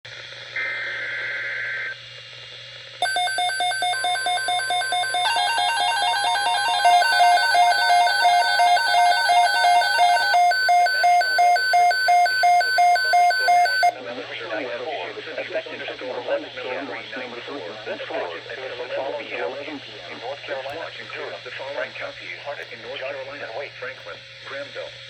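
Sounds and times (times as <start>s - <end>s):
alert receiver beeping rapidly: 3.0s - 13.9s
data tones burst: 3.0s - 13.9s
steady warning tone: 3.0s - 13.9s.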